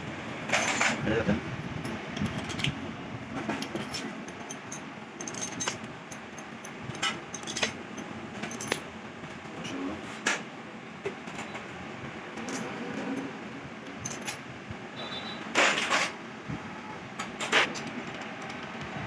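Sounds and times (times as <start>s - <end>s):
metallic clinks of small parts: 3.6s - 8.9s, 14.0s - 14.4s.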